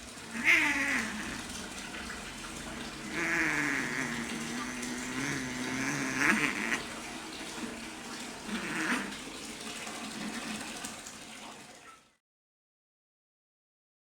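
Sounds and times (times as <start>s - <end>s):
cats yowling: 0.2s - 1.8s, 2.8s - 6.9s, 8.5s - 9.2s
cats hissing: 0.2s - 2.0s, 2.7s - 7.0s, 8.4s - 9.2s.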